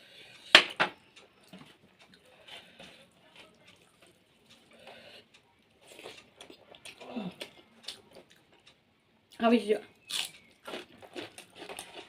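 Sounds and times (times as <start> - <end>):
soft eating noises: 0.0 - 12.0
clatter and crunching: 10.1 - 12.0.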